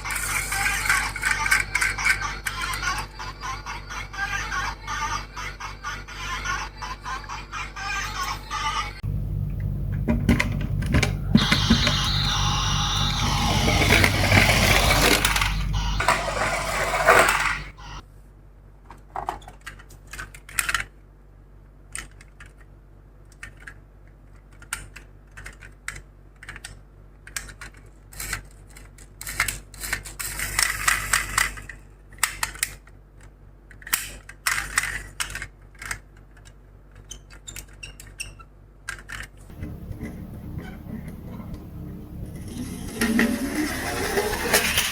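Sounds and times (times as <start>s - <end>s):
toy parts clicking and clacking: 0.0s - 3.1s, 19.4s - 20.9s, 23.3s - 39.4s
toy cars rolling down slope: 11.3s - 18.0s, 42.2s - 44.9s.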